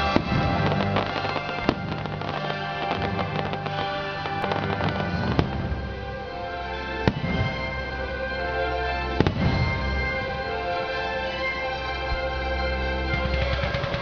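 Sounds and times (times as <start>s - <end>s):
fireworks bangs: 0.0s - 6.2s, 7.0s - 8.0s, 9.1s - 11.4s, 13.0s - 14.0s
fireworks crackling: 0.0s - 14.0s
music soundtrack: 0.0s - 14.0s.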